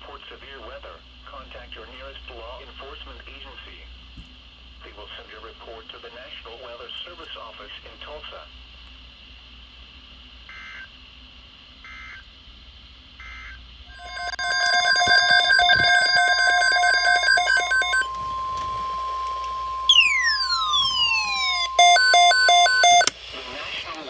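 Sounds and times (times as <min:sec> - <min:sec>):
digital data bursts: 0:14.0 - 0:23.1
falling electronic sweep: 0:14.0 - 0:23.1
rapid electronic beeping: 0:14.0 - 0:23.1
steady attention tone: 0:14.0 - 0:23.2.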